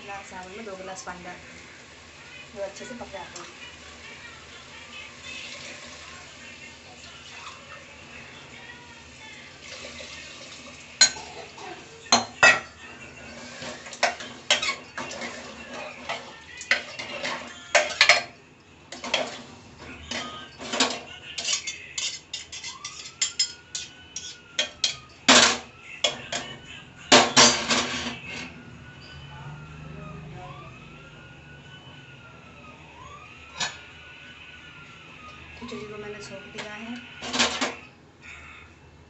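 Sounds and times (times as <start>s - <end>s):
metal spoon clanking in a pot: 11.0s - 11.5s, 13.9s - 18.3s, 20.1s - 26.5s.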